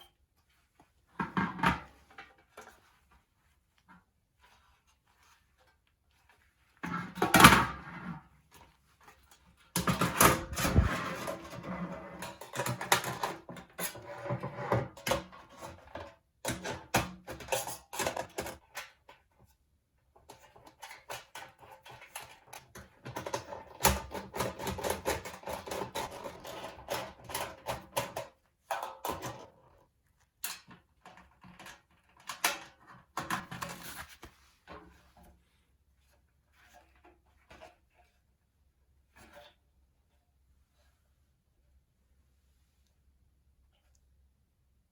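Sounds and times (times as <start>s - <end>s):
metal sheet clicking and scraping: 9.8s - 13.9s.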